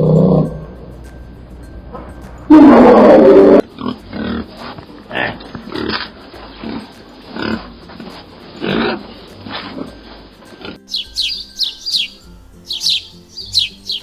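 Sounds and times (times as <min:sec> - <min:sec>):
loud distorted animal call: 0:02.5 - 0:04.5
pig grunting: 0:02.5 - 0:10.9.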